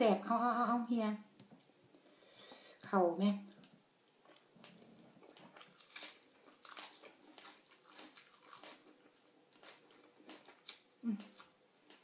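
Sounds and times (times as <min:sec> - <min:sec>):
person chewing food: 0:03.5 - 0:12.0.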